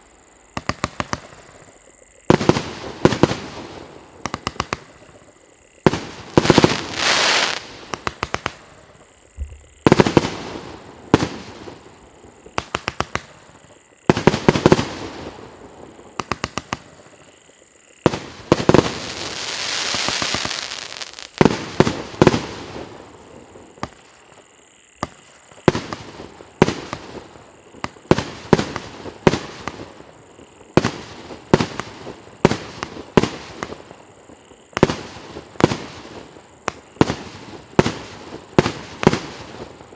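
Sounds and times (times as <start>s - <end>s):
fireworks hiss: 2.3s - 13.5s, 18.0s - 24.2s
fireworks crackling: 2.3s - 17.2s, 18.0s - 24.2s
fireworks bangs: 5.8s - 8.8s, 9.4s - 11.9s.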